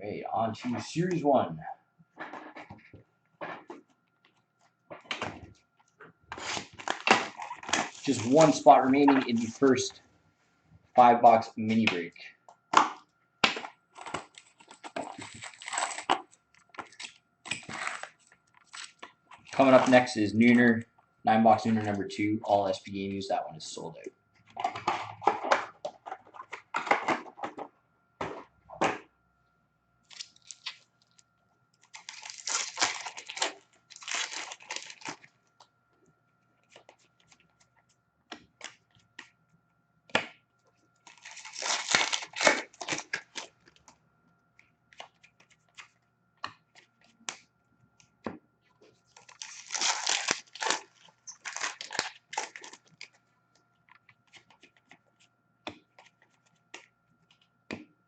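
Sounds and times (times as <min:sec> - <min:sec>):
foil wrappers tearing and crinkling: 0:06.3 - 0:09.7, 0:13.9 - 0:20.1, 0:30.1 - 0:31.2, 0:31.8 - 0:35.3, 0:41.0 - 0:43.8, 0:49.1 - 0:53.2.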